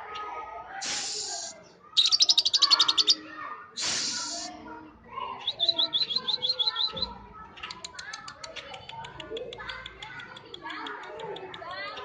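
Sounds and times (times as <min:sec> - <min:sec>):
lovebird chattering: 0:00.8 - 0:03.2, 0:05.4 - 0:07.0.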